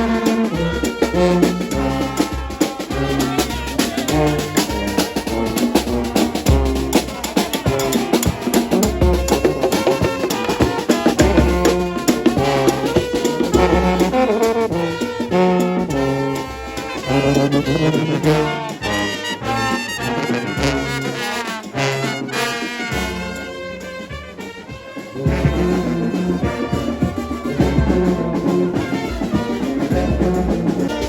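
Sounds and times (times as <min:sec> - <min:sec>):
bass line: 0:00.0 - 0:16.5, 0:25.2 - 0:31.0
brass horns music: 0:00.0 - 0:31.0.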